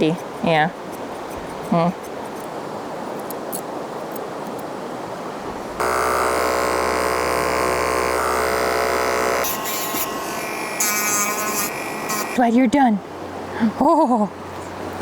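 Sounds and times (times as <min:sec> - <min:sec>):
electric clippers buzzing: 0:05.8 - 0:12.4.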